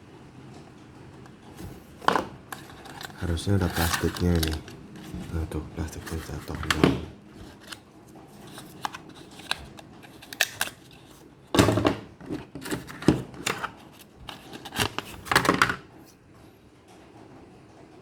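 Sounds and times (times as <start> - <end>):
packaging rustling: 1.5 - 15.6
plastic parts clicking: 1.6 - 7.8, 8.4 - 15.8.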